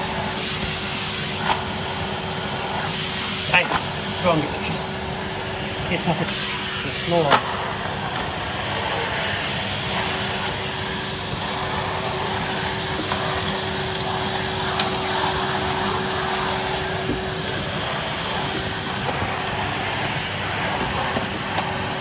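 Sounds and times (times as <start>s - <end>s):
vacuum cleaner running: 0.0s - 22.0s.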